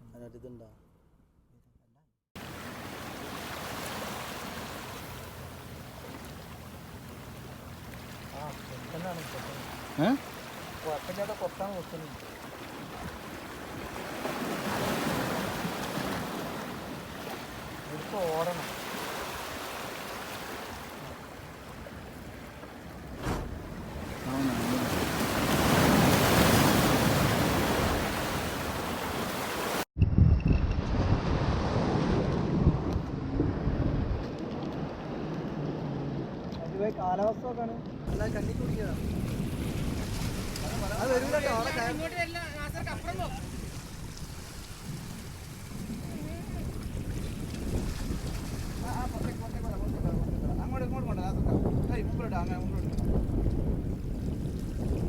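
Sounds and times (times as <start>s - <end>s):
wind: 0.0s - 55.0s
boat engine humming: 2.4s - 14.2s, 16.5s - 26.3s
rushing water: 2.4s - 29.9s, 38.1s - 50.1s
wind buffeting microphone: 30.0s - 36.6s, 38.1s - 55.0s.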